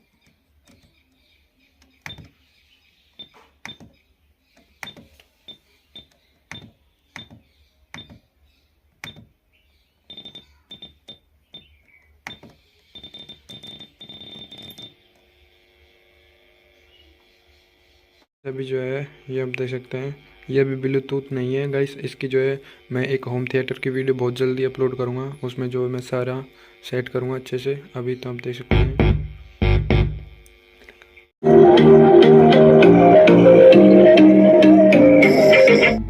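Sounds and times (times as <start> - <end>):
faint steady hum: 11.8 - 31.3.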